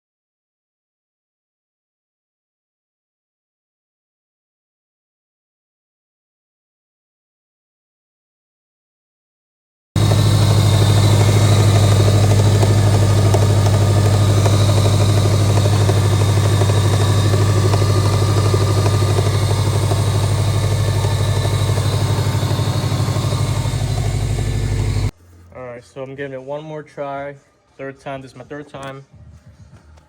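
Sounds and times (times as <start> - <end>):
car engine idling: 10.0 - 25.1.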